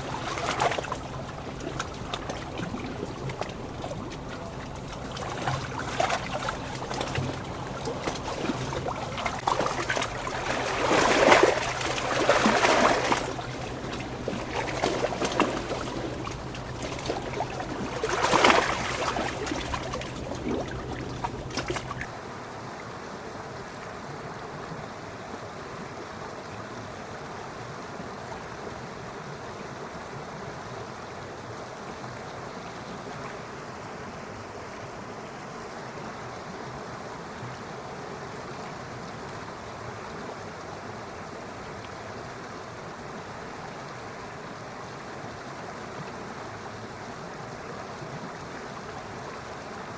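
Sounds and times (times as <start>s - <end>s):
stream water splashing: 0.0s - 22.2s.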